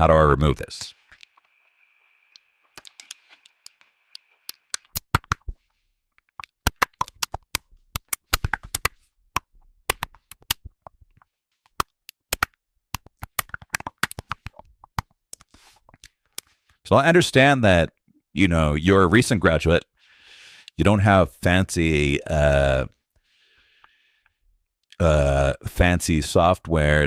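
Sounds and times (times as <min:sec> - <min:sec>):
keyboard typing: 0:02.7 - 0:05.6, 0:09.9 - 0:10.6, 0:12.1 - 0:14.6.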